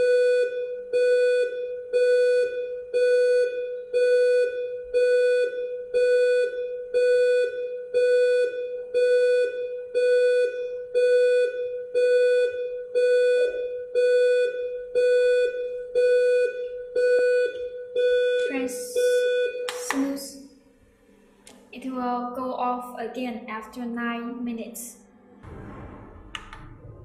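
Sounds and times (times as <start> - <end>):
alarm clock buzzer beeping: 0.0 - 19.9.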